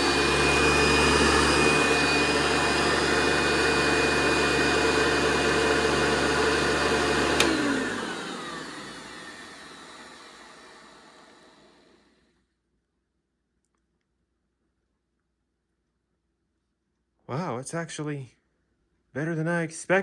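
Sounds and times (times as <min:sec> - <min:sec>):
motor winding down whine: 0:00.0 - 0:12.2
vacuum cleaner running: 0:00.0 - 0:12.3
vacuum switch click: 0:05.0 - 0:09.0.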